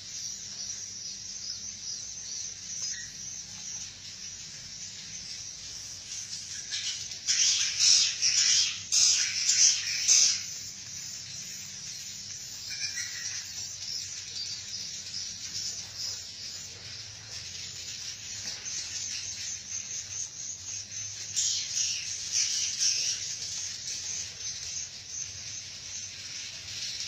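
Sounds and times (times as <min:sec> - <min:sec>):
swiftlets twittering and chirping: 0:00.0 - 0:27.0.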